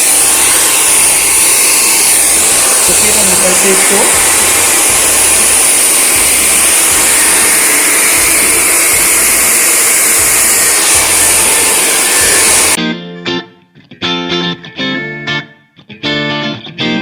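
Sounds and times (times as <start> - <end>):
hair dryer blowing: 0.0 - 12.8.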